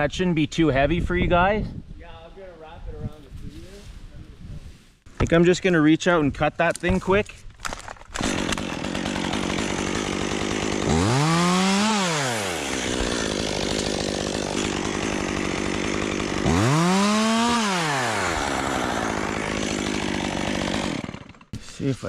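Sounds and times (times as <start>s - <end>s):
chainsaw idling and revving: 8.2s - 21.6s.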